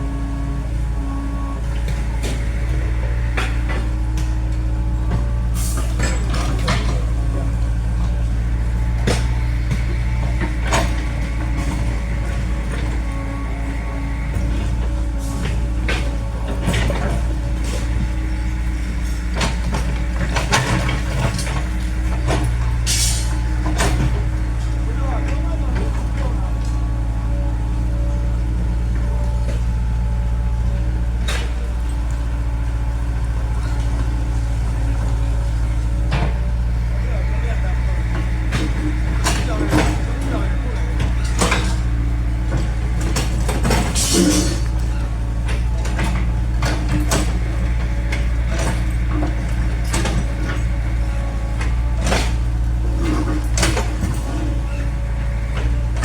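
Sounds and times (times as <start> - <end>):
diesel engine humming: 0.0 - 56.0
sharp clanks and knocks: 38.1 - 54.8.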